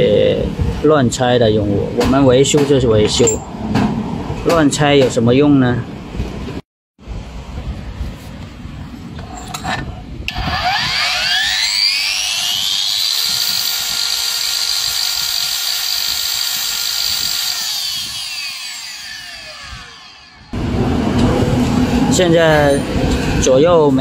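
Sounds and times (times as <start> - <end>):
wall chaser motor whining: 10.3 - 23.4.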